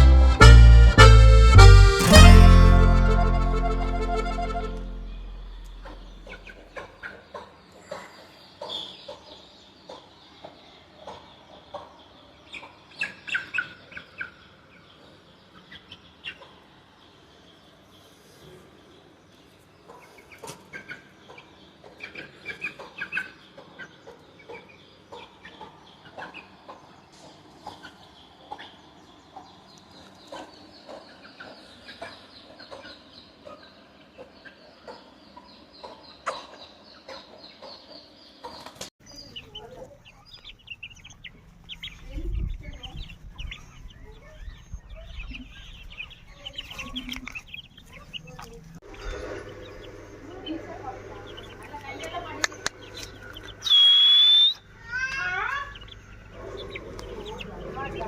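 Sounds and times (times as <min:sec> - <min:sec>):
rooster clucking: 0:01.5 - 0:06.9, 0:45.0 - 0:58.0
low rumble: 0:02.3 - 0:06.3, 0:48.6 - 0:53.6.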